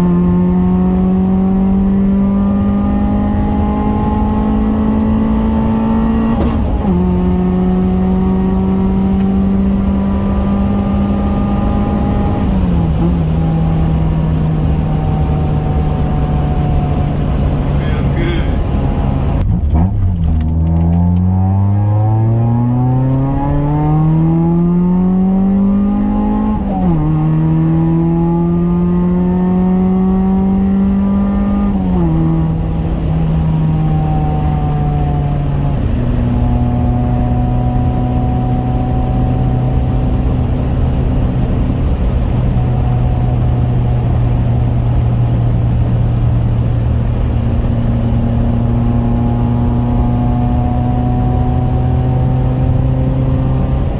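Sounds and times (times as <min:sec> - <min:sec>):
car engine accelerating: 0:00.0 - 0:53.9.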